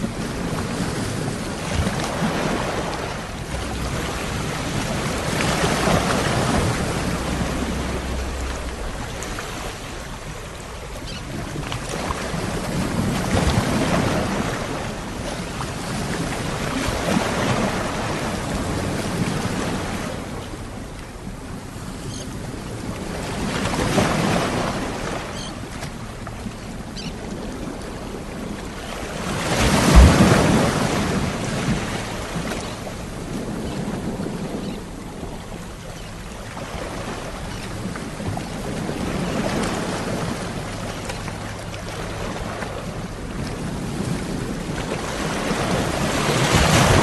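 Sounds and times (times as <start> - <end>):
ocean waves breaking: 0.0 - 47.0.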